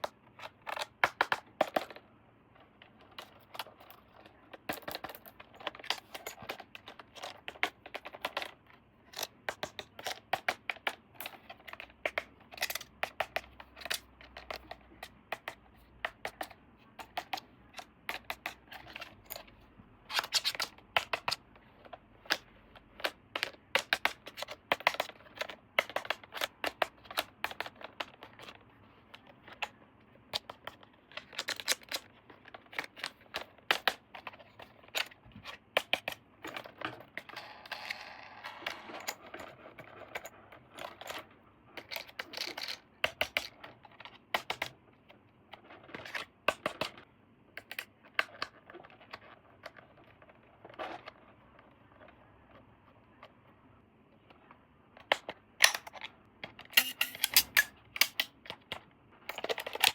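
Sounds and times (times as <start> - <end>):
toy packaging being opened: 56.7 - 58.4.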